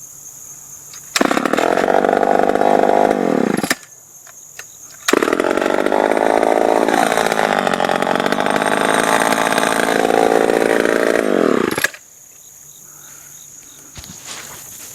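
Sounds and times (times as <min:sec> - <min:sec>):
chainsaw running at high revs: 0:01.0 - 0:03.8, 0:05.0 - 0:12.0.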